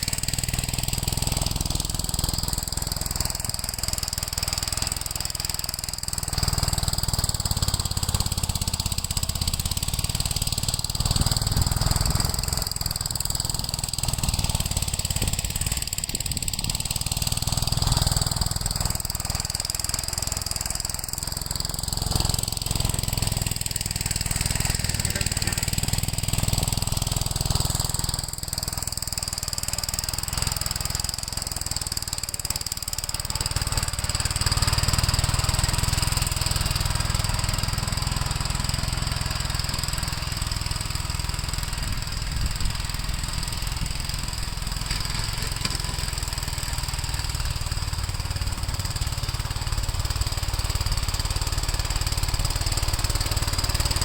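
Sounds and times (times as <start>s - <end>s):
single-cylinder engine running: 0.0s - 54.0s.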